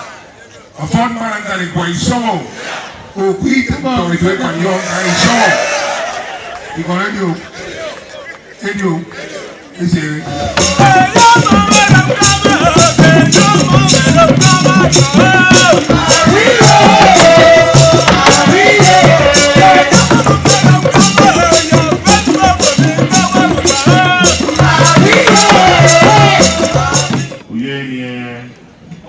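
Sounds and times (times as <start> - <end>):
music with percussion beat: 10.3 - 27.4.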